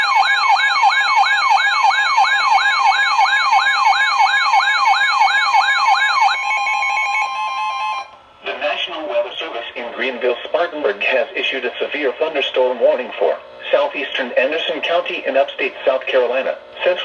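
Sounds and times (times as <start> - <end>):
electronic siren sweeps: 0.0 - 8.1.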